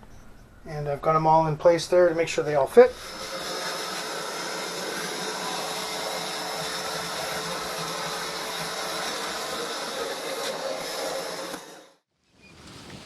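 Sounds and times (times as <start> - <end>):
vacuum cleaner running: 2.3 - 12.0.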